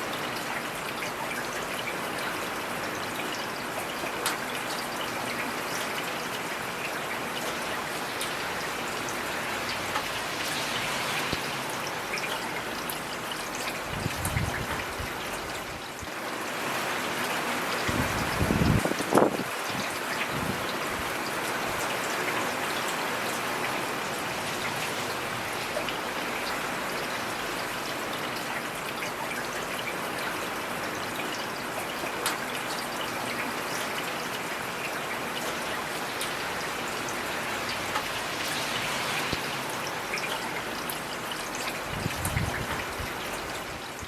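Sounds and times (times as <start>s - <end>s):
heavy rain: 0.0s - 44.0s.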